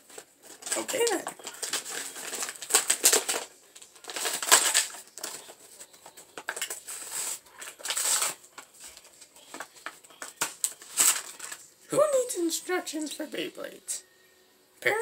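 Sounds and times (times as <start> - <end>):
cardboard rustling: 0.0 - 11.6
plastic packaging crinkling: 0.0 - 11.7.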